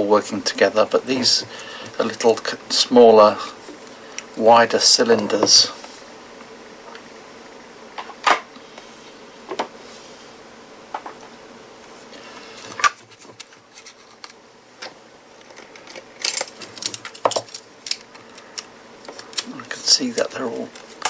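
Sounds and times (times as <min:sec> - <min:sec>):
plastic parts clicking and knocking: 0:14.2 - 0:19.5.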